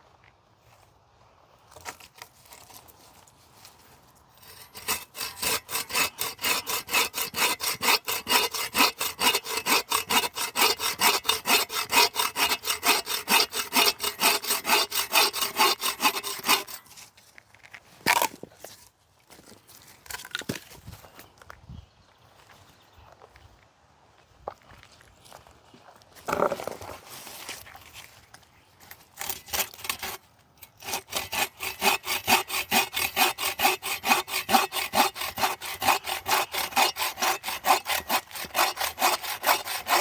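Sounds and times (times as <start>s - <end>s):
hand saw cutting wood: 4.4s - 17.1s, 29.2s - 40.0s.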